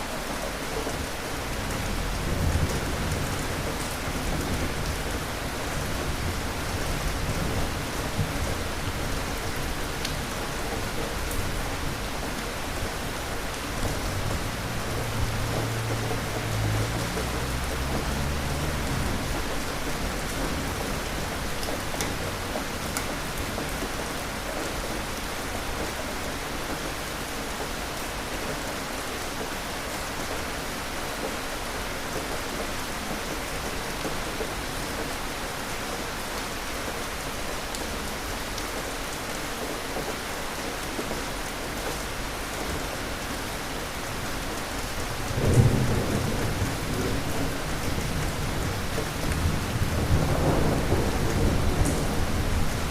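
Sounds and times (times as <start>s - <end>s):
heavy rain falling: 0.0s - 52.9s
thunder rumbling: 1.4s - 10.3s, 45.2s - 52.9s
loud thunderclap: 45.4s - 52.9s.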